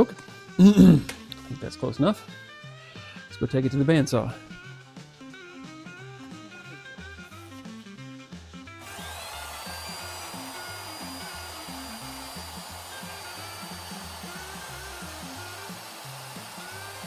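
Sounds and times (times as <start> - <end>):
background music with bass: 0.0 - 17.0
bandsaw motor whine: 8.7 - 17.0.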